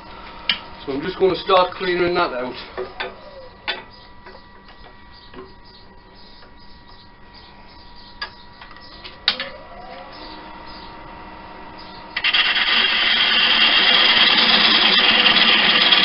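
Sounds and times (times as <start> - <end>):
wood lathe motor whining: 9.0 - 16.0
gouge scraping spinning wood: 12.2 - 16.0.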